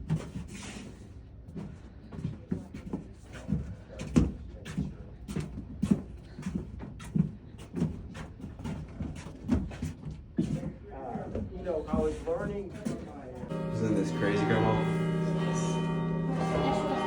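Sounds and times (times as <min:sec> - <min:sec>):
footsteps climbing stairs: 0:00.0 - 0:17.0.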